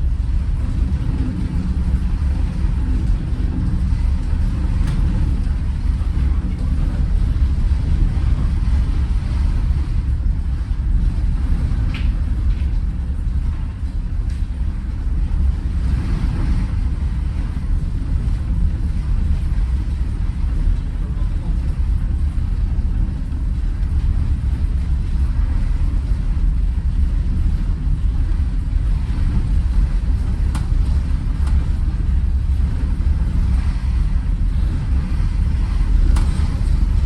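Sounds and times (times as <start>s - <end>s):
ferry engine rumble: 0.0s - 37.0s.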